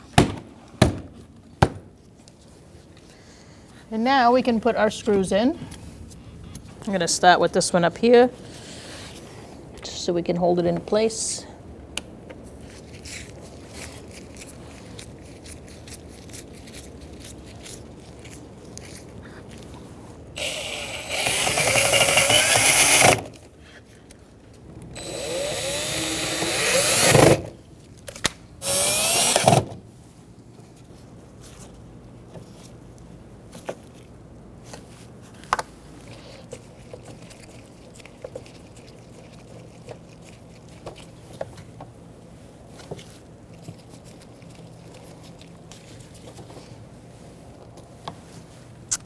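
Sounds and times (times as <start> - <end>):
power drill driving screws: 20.4 - 23.3, 25.0 - 27.5, 28.6 - 29.8.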